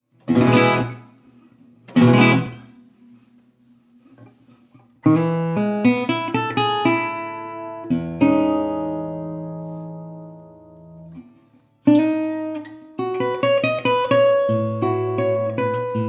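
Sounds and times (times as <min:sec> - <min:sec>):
picked guitar notes: 0:00.3 - 0:01.1, 0:01.9 - 0:02.8, 0:05.0 - 0:16.0
resonator guitar strummed chords: 0:00.3 - 0:01.1, 0:01.9 - 0:02.8, 0:05.0 - 0:11.2.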